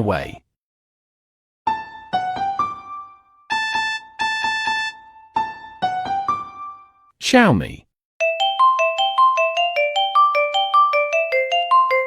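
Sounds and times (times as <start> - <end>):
piano-like phone ringtone: 1.8 - 7.0, 8.2 - 12.0.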